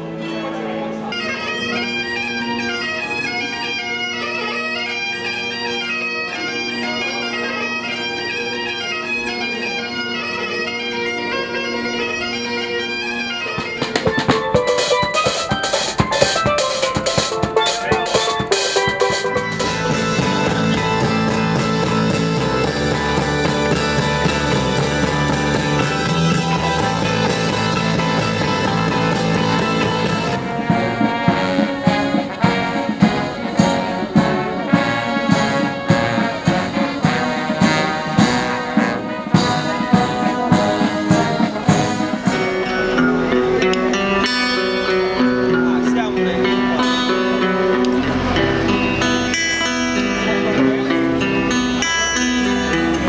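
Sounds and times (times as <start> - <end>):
bagpipes playing a melody: 0.0 - 53.0
band music with low bass: 0.0 - 53.0
rapid drum strokes: 13.6 - 46.7.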